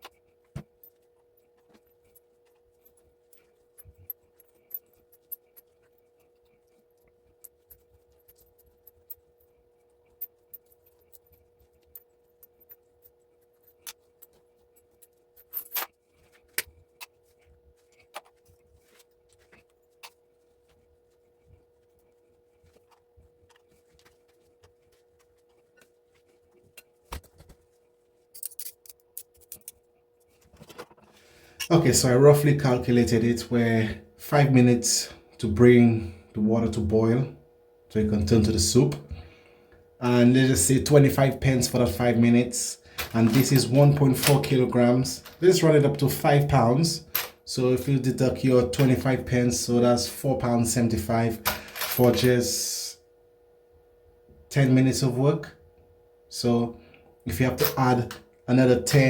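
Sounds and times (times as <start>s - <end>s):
faint steady hum: 0.0s - 59.0s
small metal pieces clinking: 28.4s - 29.8s.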